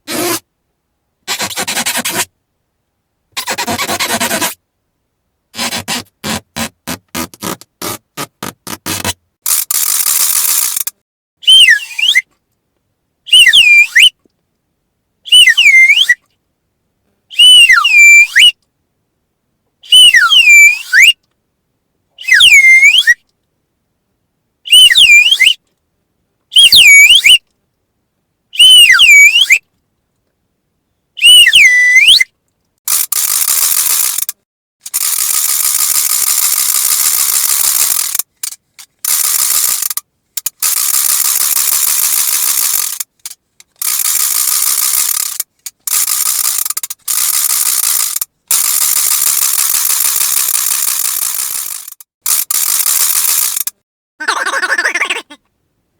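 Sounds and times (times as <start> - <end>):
wooden ratchet clatter: 6.6 - 11.0, 32.9 - 53.8
dog whistle blasts: 13.3 - 14.1, 15.3 - 16.2, 17.4 - 18.5, 24.8 - 25.6, 26.6 - 27.4, 28.6 - 29.6, 31.2 - 32.3.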